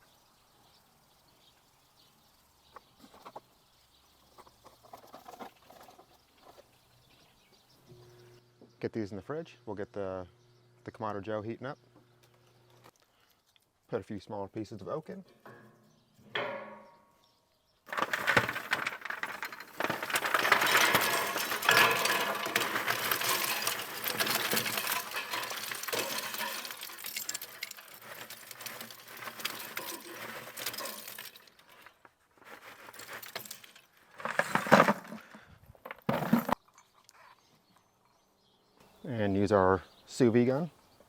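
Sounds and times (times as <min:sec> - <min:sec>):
wood and charcoal clattering: 0:02.7 - 0:08.2, 0:15.3 - 0:37.0.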